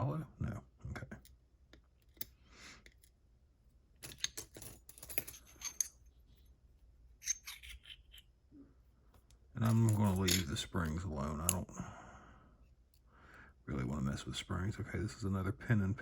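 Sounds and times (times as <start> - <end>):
metal lock parts clicking: 4.0 - 6.0, 7.2 - 8.3, 9.6 - 10.6.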